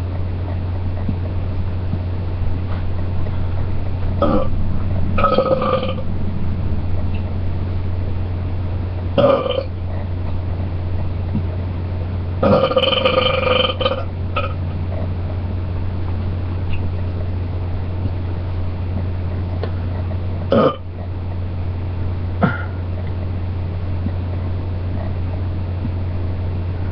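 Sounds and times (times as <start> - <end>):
steady low hum: 0.0 - 26.9
person belching: 4.2 - 4.5, 5.2 - 6.0, 9.2 - 9.7, 12.4 - 14.6, 20.5 - 20.8, 22.4 - 22.8.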